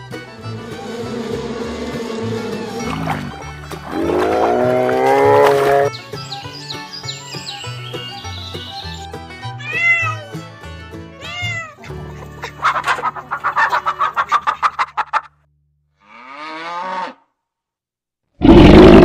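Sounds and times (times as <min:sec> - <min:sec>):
background music: 0:00.0 - 0:14.6
cat meowing: 0:09.6 - 0:10.4, 0:11.2 - 0:11.8.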